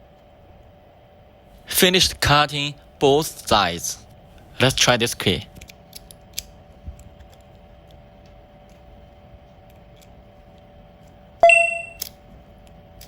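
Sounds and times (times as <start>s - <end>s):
faint hum: 0.0s - 13.0s
sharp metallic ding: 11.4s - 12.0s.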